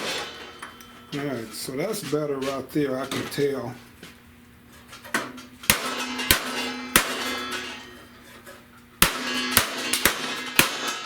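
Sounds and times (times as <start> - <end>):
hammer striking sheet metal: 0.0 - 1.3, 5.6 - 8.1, 9.0 - 11.0.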